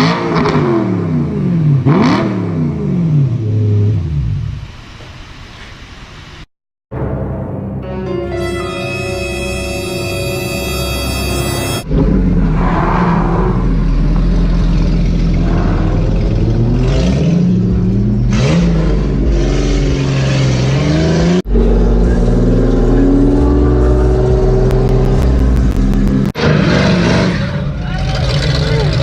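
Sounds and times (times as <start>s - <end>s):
car engine accelerating: 9.1s - 29.0s.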